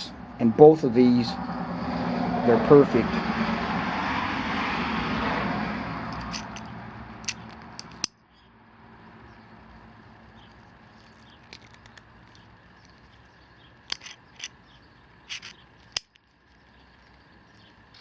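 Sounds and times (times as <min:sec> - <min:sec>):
clicks of steel pliers: 0:06.1 - 0:08.2.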